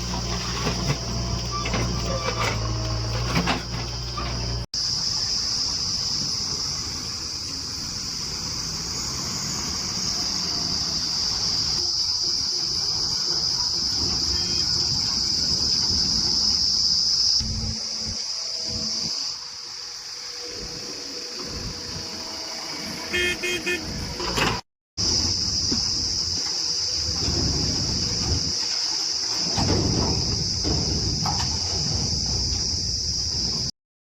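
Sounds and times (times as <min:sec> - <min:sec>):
diesel engine running: 0:00.0 - 0:04.7
high-pitched insect drone: 0:00.0 - 0:24.2, 0:25.0 - 0:31.2.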